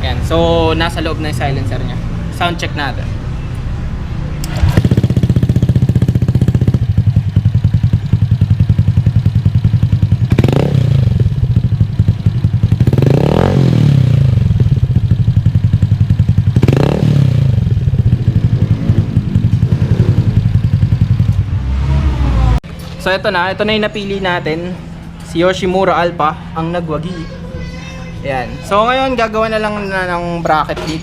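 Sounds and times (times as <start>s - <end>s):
scooter engine idling and revving: 0.0s - 29.7s.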